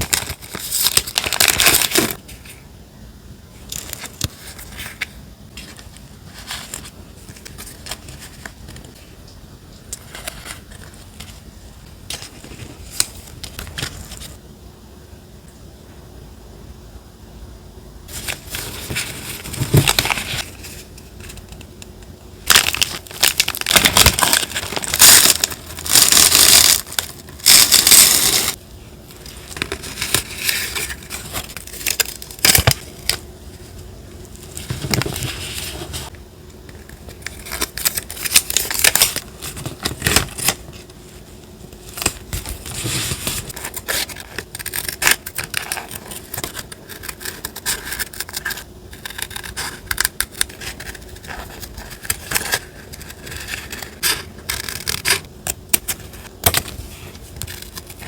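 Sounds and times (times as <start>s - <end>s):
paper crinkling and rustling: 0.0s - 2.6s, 3.7s - 9.1s, 18.1s - 21.6s, 22.5s - 36.1s, 36.8s - 58.0s.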